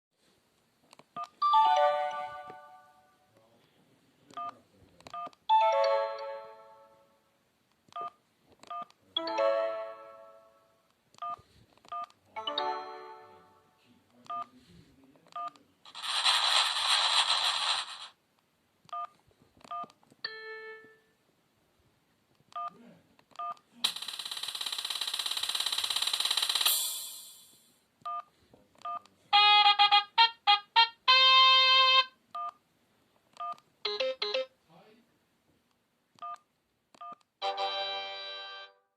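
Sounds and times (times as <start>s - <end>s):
phone melodic chimes and jingles: 1.4s - 3.1s
phone beeps: 11.2s - 12.1s, 14.3s - 14.5s, 28.1s - 30.0s, 31.2s - 32.6s, 33.4s - 34.5s
hissing burst: 15.9s - 18.1s.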